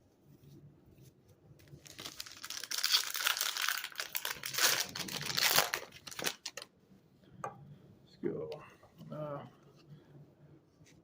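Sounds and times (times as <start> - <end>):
wrapper crinkling and tearing: 1.7 - 6.7.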